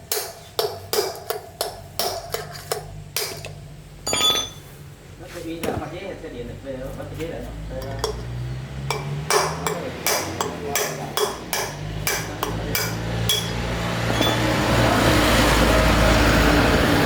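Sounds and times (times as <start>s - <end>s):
sharp hammer-like knocks: 8.9s - 14.5s.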